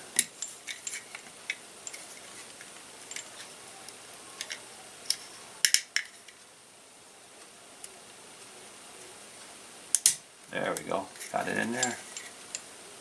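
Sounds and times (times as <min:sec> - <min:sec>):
pistol parts clicking: 0:00.1 - 0:03.5, 0:04.4 - 0:06.4.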